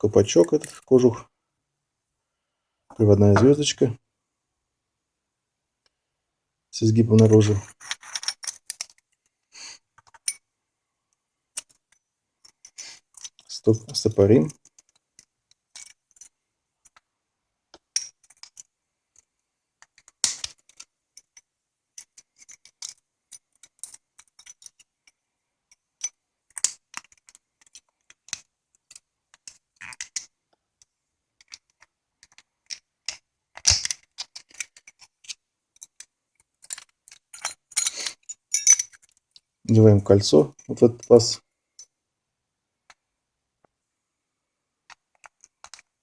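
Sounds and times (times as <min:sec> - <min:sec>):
small metal parts clicking: 0:07.2 - 0:09.3, 0:14.5 - 0:17.0, 0:17.9 - 0:25.2, 0:26.0 - 0:30.3, 0:31.4 - 0:39.4, 0:44.9 - 0:45.9.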